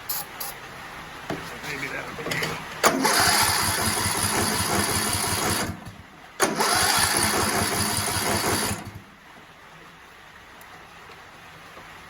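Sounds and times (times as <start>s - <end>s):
lawn mower engine cranking: 2.3s - 9.0s.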